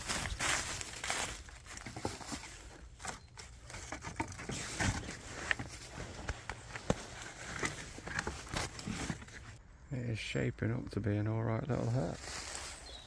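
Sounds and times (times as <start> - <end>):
footsteps on leaf litter: 0.0 - 3.5, 11.9 - 13.0
dry twigs crackling and snapping: 0.0 - 4.6.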